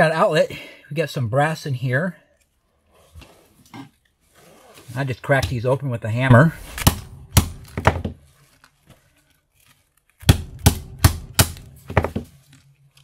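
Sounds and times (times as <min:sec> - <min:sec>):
sharp hard knocks on a hard surface: 0:06.8 - 0:08.2, 0:10.2 - 0:12.3.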